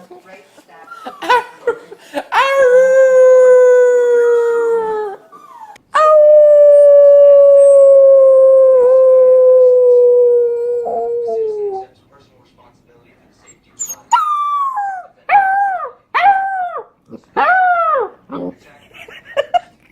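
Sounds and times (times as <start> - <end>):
puppy howling: 2.4 - 11.8, 13.8 - 18.2.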